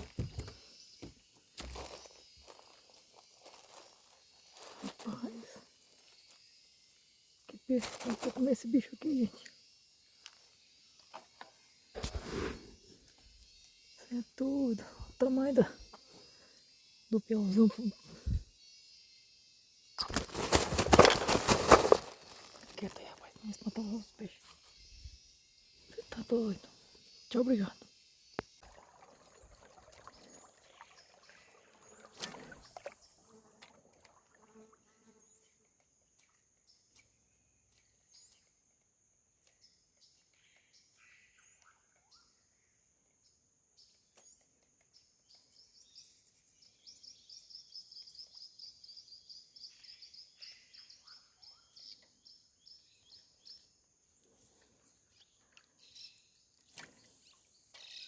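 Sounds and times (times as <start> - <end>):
high insect drone: 0.0 - 29.4, 34.4 - 36.8.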